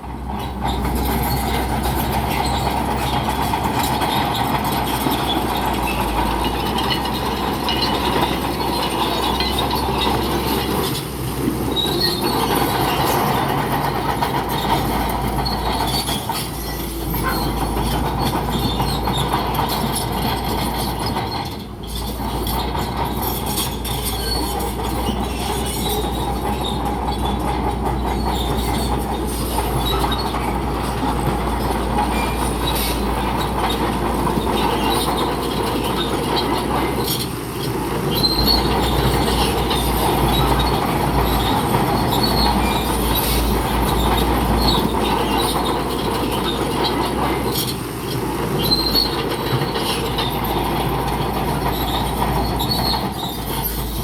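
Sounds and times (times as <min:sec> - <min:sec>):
bulldozer diesel engine under load: 0:00.0 - 0:54.0
crawler tracks squealing and clanking: 0:00.0 - 0:54.0.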